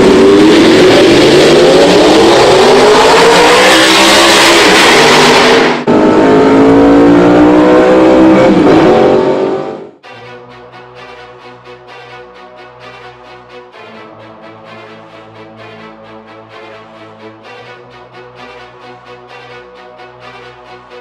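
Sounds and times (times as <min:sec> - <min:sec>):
car engine accelerating hard: 0:00.0 - 0:10.0.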